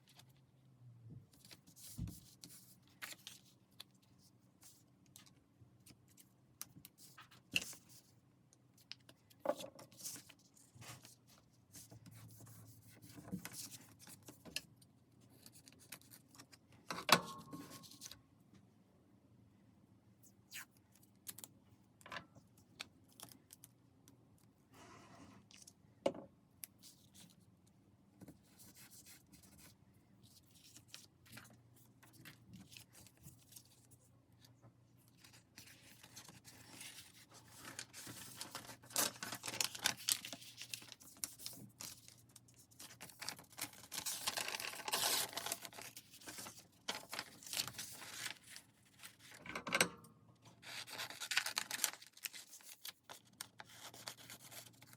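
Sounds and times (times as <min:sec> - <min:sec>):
paper rustling and scraping: 0:35.2 - 0:42.2, 0:42.8 - 0:49.4.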